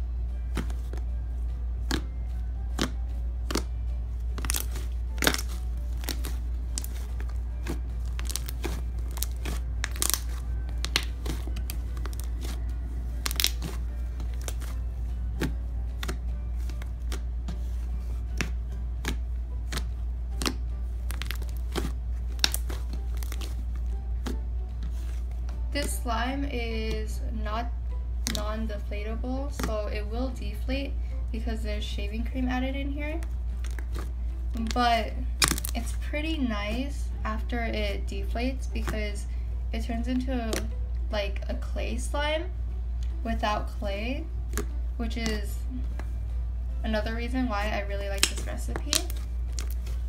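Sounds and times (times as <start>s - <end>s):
steady low hum: 0.0s - 50.0s
slime crackling and popping: 4.3s - 14.8s, 18.4s - 24.4s, 28.2s - 28.5s, 29.5s - 29.8s, 33.6s - 35.9s, 48.0s - 50.0s.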